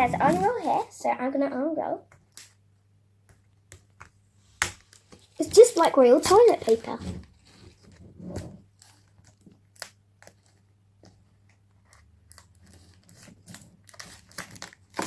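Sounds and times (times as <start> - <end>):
paper wrap rustling: 0.0 - 1.0, 4.7 - 10.7, 11.9 - 15.0.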